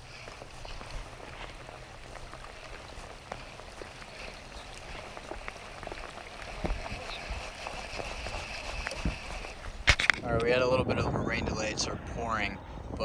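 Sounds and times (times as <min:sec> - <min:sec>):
steady rain falling: 0:00.0 - 0:10.2.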